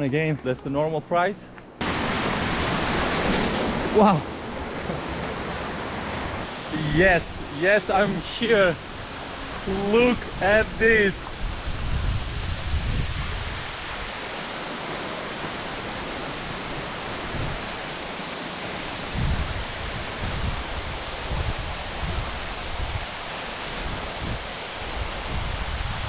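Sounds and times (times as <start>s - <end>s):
waterfall rushing: 1.8s - 4.6s, 5.6s - 26.0s
wind buffeting microphone: 6.3s - 14.2s, 16.4s - 17.8s, 19.0s - 26.0s.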